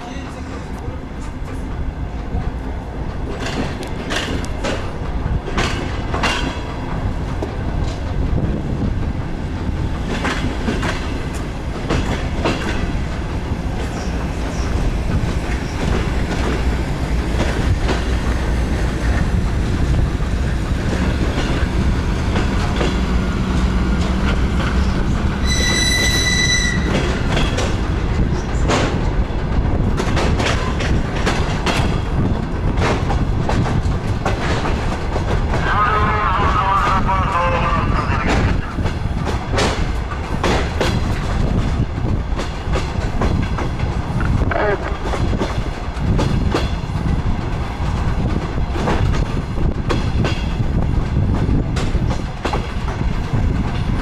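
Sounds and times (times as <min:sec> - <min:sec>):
train running rumble: 0:00.0 - 0:54.0
train wheels clacking over rail joints: 0:00.3 - 0:37.2, 0:38.3 - 0:54.0
wheel squeal: 0:25.4 - 0:27.2.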